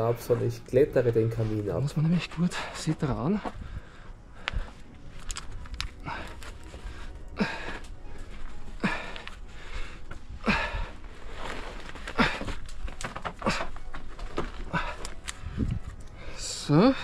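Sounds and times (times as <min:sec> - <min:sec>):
person breathing hard: 0:03.4 - 0:17.0.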